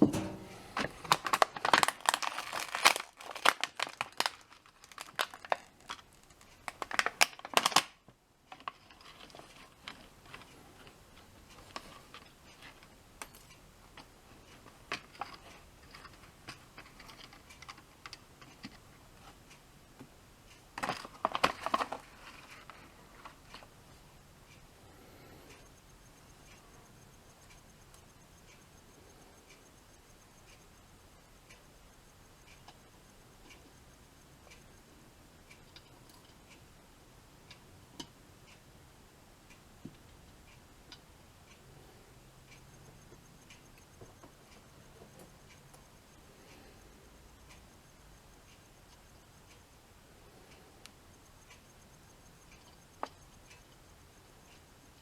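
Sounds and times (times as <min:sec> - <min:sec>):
small parts clicking and rattling: 0:00.8 - 0:19.6, 0:20.5 - 0:23.7.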